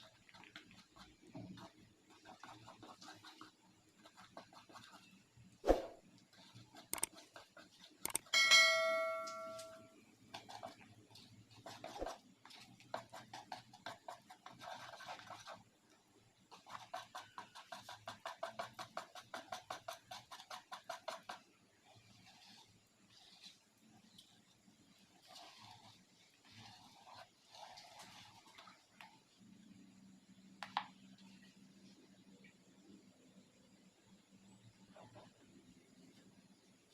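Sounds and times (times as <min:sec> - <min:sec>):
batter whisked in a bowl: 0:00.0 - 0:36.7
bowl ringing: 0:08.4 - 0:09.9.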